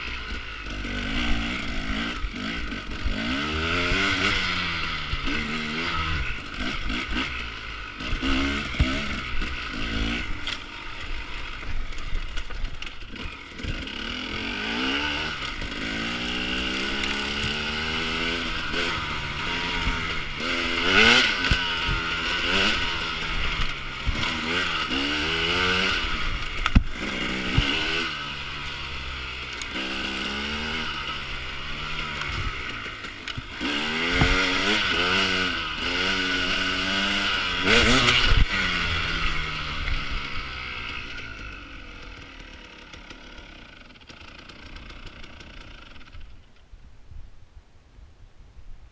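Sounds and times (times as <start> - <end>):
dirt bike engine revving: 0.0 - 46.6.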